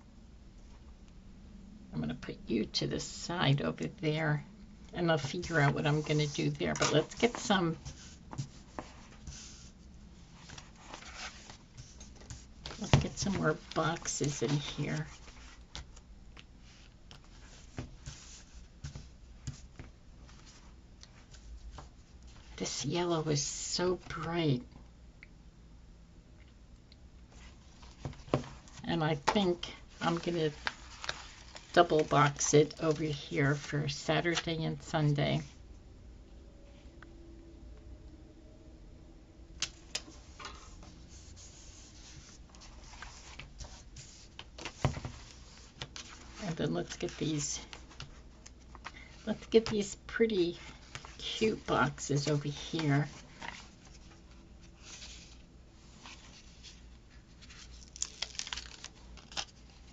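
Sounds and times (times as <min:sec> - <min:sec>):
paper rustling: 0:10.4 - 0:16.0, 0:27.4 - 0:33.7, 0:50.5 - 0:59.9.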